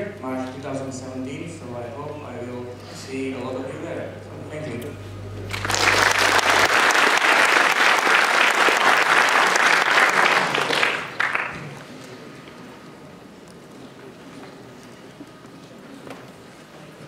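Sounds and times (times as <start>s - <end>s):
audience clapping: 5.4s - 12.2s.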